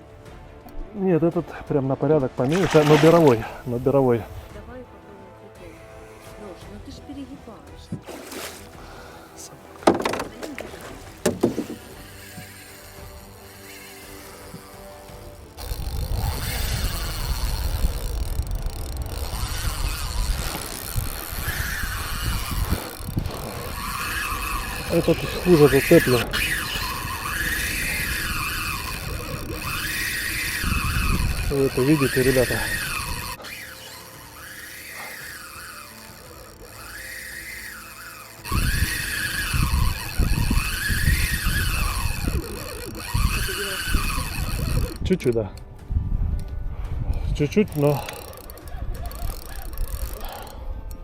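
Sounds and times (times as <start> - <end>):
fishing reel drag whining: 2.5 - 4.4, 8.1 - 45.4, 47.1 - 51.0
wind buffeting microphone: 15.6 - 33.4, 38.5 - 50.9.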